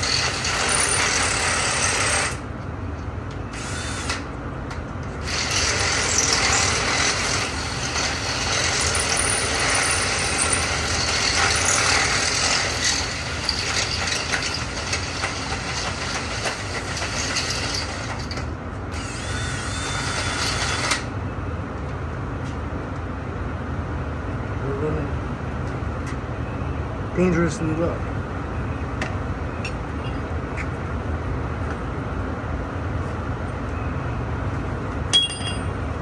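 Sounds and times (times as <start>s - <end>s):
power drill ratcheting: 5.2s - 18.4s.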